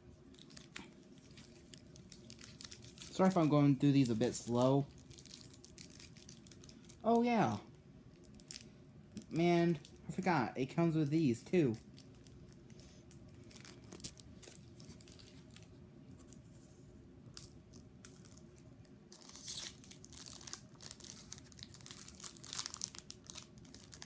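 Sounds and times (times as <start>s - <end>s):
foil wrapper crinkling and tearing: 0.3s - 7.6s, 11.4s - 15.7s, 17.4s - 24.0s.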